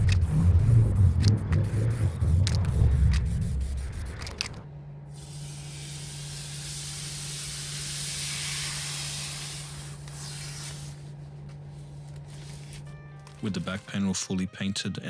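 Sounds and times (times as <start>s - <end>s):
aerosol can spraying: 0.0s - 4.6s, 5.2s - 11.1s.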